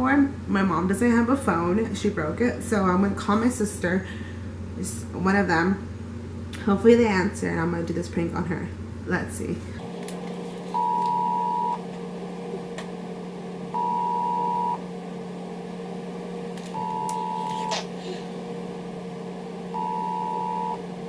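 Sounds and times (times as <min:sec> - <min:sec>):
phone ringback tone beeps: 0:10.8 - 0:11.8, 0:13.8 - 0:14.8, 0:16.8 - 0:17.7, 0:19.8 - 0:20.8.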